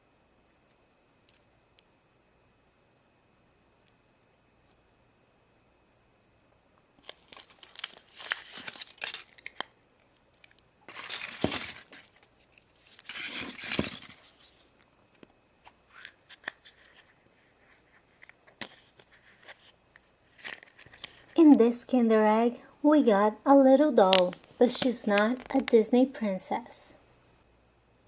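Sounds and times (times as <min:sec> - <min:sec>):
foil wrapper crinkling: 0:07.0 - 0:14.7, 0:20.3 - 0:21.4.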